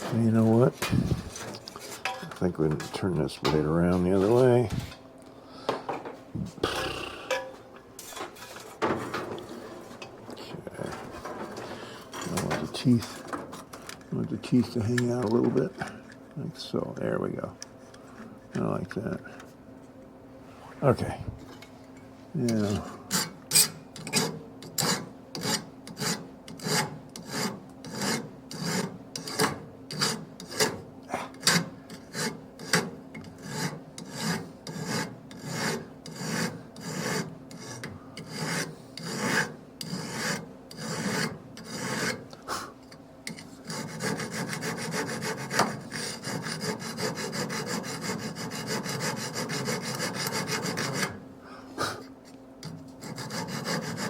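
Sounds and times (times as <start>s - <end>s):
hand file rasping on steel: 24.1s - 30.7s, 31.4s - 42.2s, 43.3s - 51.2s, 53.0s - 54.0s.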